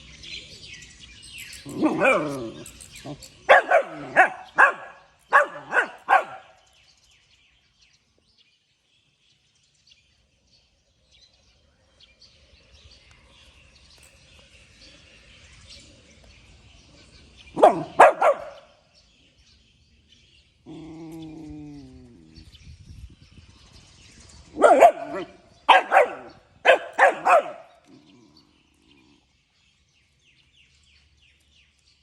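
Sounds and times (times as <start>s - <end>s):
puppy barking: 3.5s - 6.6s, 17.6s - 18.7s, 24.6s - 27.7s.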